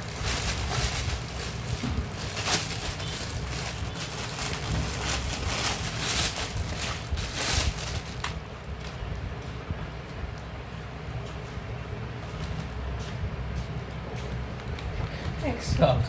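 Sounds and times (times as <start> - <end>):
plastic packaging crinkling: 0.0 - 8.8
steady low rumble: 0.0 - 16.0.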